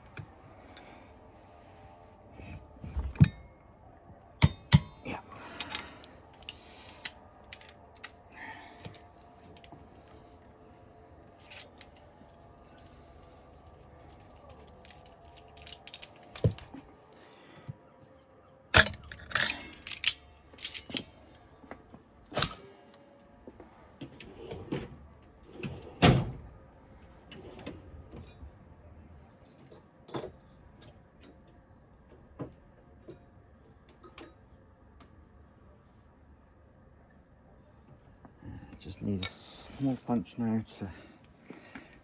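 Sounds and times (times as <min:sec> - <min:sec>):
metal hand tools clinking: 0:18.8 - 0:21.1.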